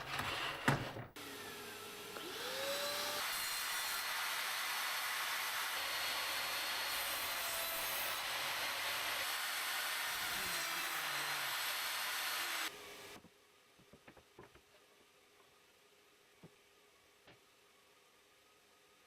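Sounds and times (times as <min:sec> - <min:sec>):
table saw cutting wood: 0:00.0 - 0:13.2.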